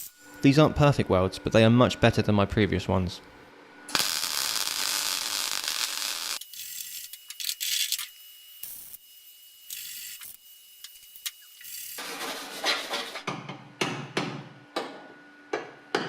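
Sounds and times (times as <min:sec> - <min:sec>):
welding arc crackling: 0:03.9 - 0:12.0.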